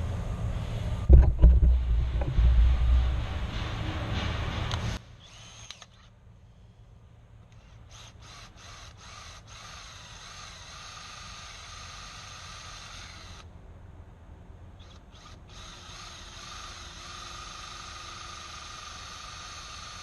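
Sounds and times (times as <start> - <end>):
wind buffeting microphone: 1.0 - 5.0
power drill running: 4.7 - 6.1, 7.5 - 13.5, 14.8 - 20.0.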